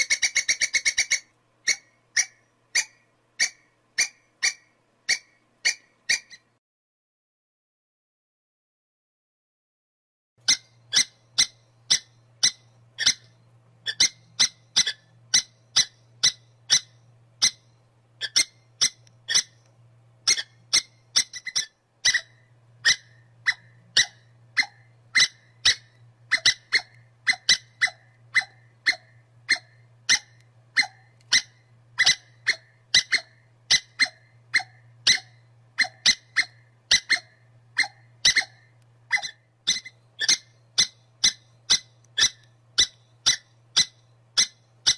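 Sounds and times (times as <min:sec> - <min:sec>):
squirrel chirping: 0:00.0 - 0:06.6, 0:10.4 - 0:44.9
faint low hum: 0:10.4 - 0:44.9.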